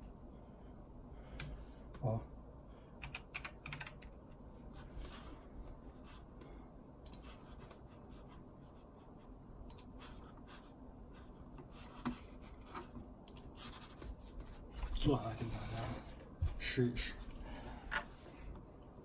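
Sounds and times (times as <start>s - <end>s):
rubbing and scraping on a desk: 13.6s - 16.3s.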